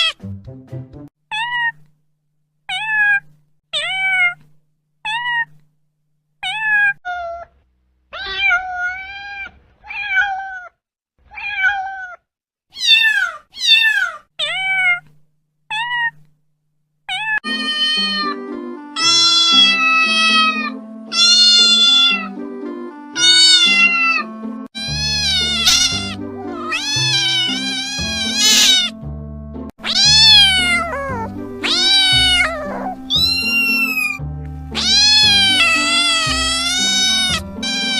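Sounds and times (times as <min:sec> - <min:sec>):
cats meowing: 0:02.7 - 0:04.5, 0:05.1 - 0:05.6, 0:06.4 - 0:15.1, 0:17.1 - 0:18.4, 0:19.0 - 0:22.3, 0:23.2 - 0:29.0, 0:29.8 - 0:37.9
background music with bass: 0:30.6 - 0:37.7.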